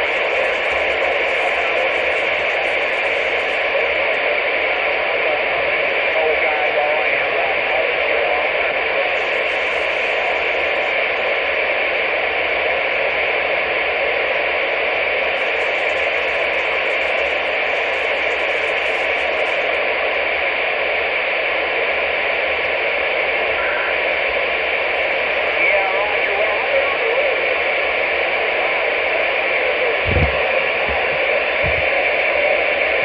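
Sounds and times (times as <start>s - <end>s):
radio static hiss: 0.0s - 33.0s.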